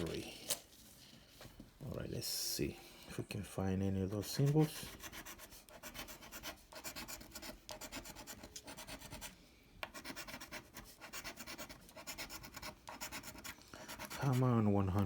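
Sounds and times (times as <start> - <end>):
scratching a scratch-off ticket: 4.1 - 15.0.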